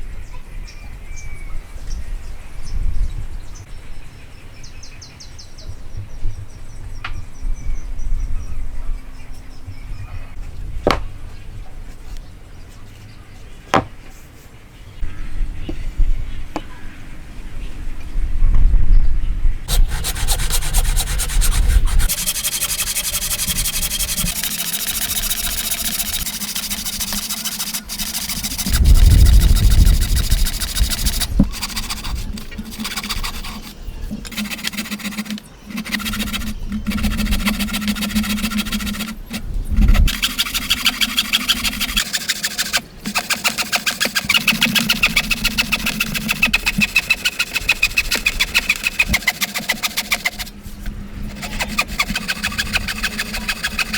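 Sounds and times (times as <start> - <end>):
tool rasping against wood: 19.7 - 50.6, 51.2 - 53.9.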